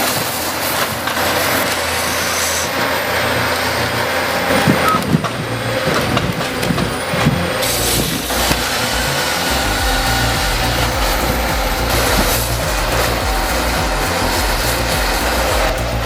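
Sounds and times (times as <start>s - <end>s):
heavy machinery running: 0.0s - 16.0s.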